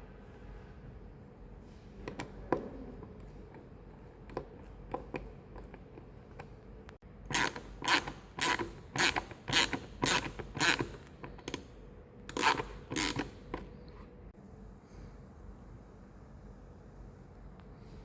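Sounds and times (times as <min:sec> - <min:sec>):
hand ratchet clicking: 0:07.3 - 0:11.6, 0:12.3 - 0:13.4.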